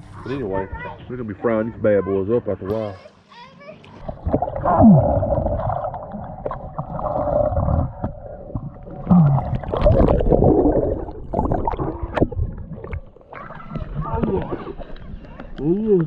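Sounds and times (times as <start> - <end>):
water sloshing underwater: 3.8 - 16.0.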